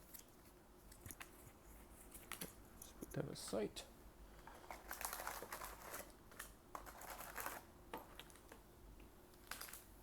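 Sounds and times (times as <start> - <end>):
packaging crinkling and rustling: 4.5 - 8.6, 9.4 - 9.9.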